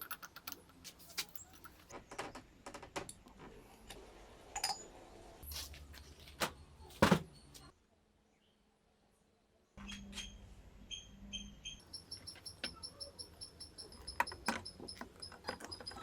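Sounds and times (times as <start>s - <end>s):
small metal parts clinking: 11.9s - 16.0s.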